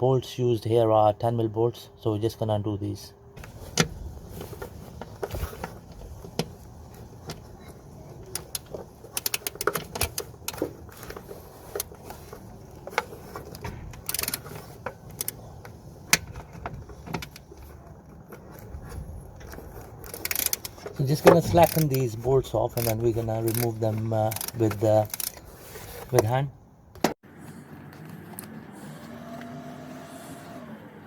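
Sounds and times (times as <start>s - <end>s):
wrench clicking on bolts: 14.0s - 15.4s, 20.0s - 22.0s, 22.8s - 25.4s.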